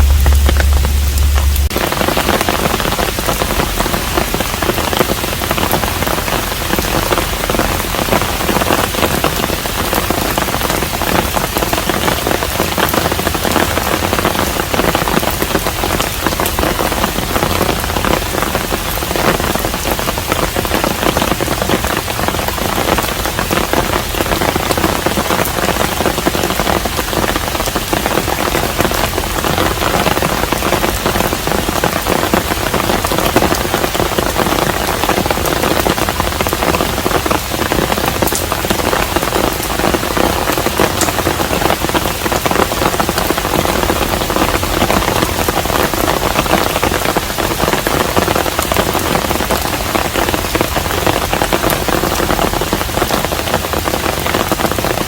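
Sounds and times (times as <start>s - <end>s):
low hum: 0.0s - 2.1s
rain falling on roof: 0.0s - 55.0s.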